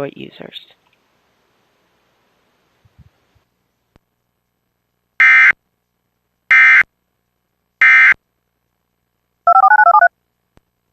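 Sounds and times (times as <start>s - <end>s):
harsh digital data tone bursts: 7.8s - 8.2s.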